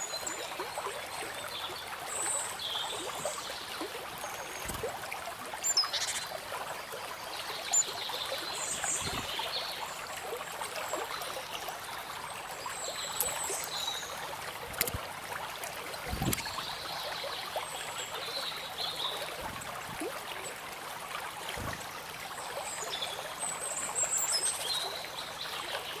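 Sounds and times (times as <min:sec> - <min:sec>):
small birds chirping: 0:00.0 - 0:10.0, 0:10.8 - 0:15.0, 0:16.0 - 0:20.6
stream trickling and babbling: 0:00.0 - 0:26.0.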